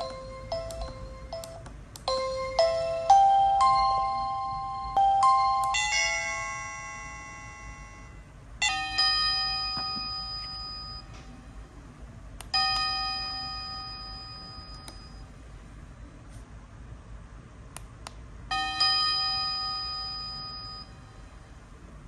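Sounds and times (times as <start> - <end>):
doorbell chime tones: 0.0 - 11.2, 12.6 - 15.3, 18.5 - 21.3.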